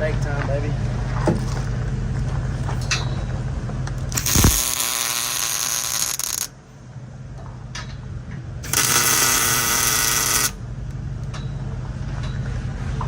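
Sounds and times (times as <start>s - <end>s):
steady low hum: 0.0s - 13.0s
welder crackling hiss: 4.2s - 6.5s, 8.7s - 10.6s.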